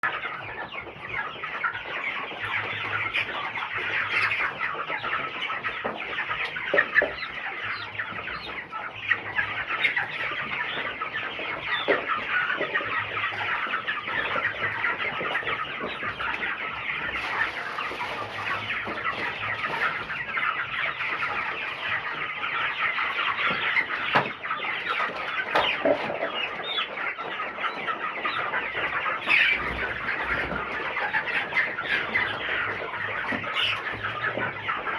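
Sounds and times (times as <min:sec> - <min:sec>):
chickens peeping and clucking: 0:00.0 - 0:34.9.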